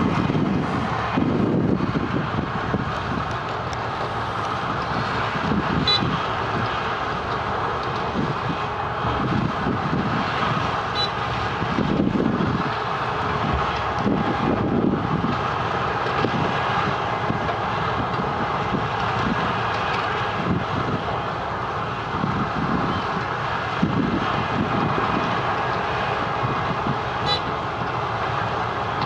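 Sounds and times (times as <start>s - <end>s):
milling machine heavy drone: 0.0s - 29.0s.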